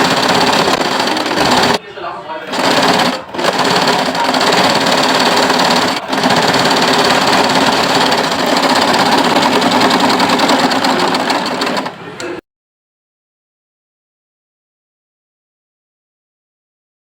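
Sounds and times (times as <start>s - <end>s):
electric sewing machine stitching: 0.0s - 1.8s, 2.5s - 12.0s.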